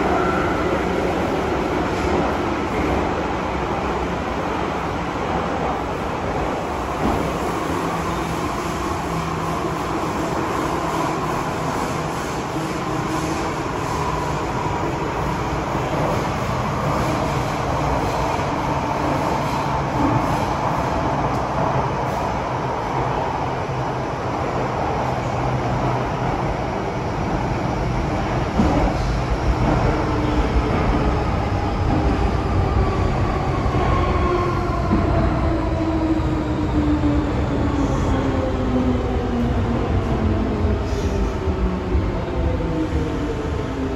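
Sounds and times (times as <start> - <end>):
train wheel and track rumble: 0.0 - 43.9.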